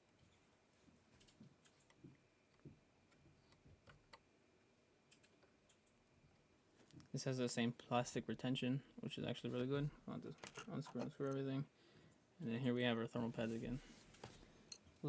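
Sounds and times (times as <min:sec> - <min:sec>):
small clicks: 0:05.1 - 0:06.0.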